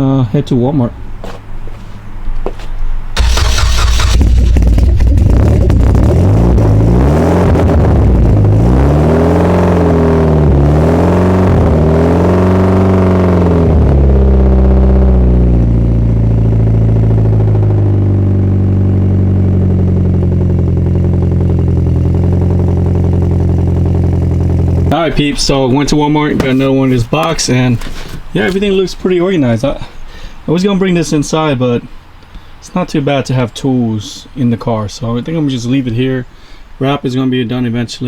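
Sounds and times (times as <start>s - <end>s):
car engine revving and idling: 3.1s - 26.6s.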